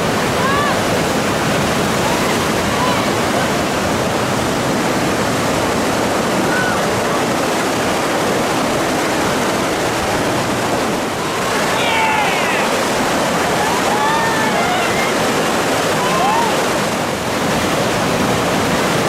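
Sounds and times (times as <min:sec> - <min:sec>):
river rapids roaring: 0:00.0 - 0:19.0.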